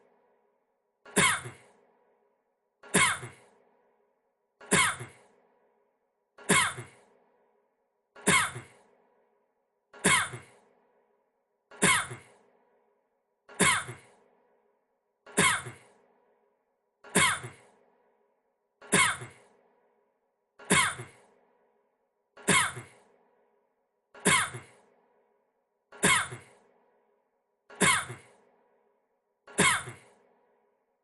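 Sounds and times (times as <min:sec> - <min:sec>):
man coughing: 0:04.6 - 0:05.2, 0:10.1 - 0:10.5, 0:13.6 - 0:14.0, 0:19.0 - 0:19.4, 0:22.4 - 0:23.0, 0:26.0 - 0:26.6, 0:27.8 - 0:28.3.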